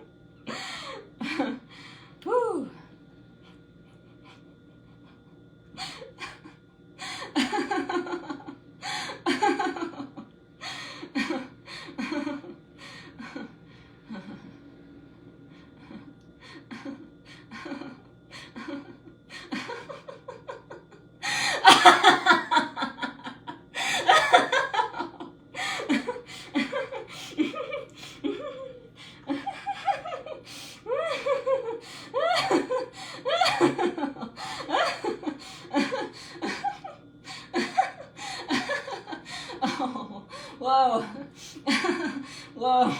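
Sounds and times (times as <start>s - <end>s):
person laughing: 16.7s - 42.9s.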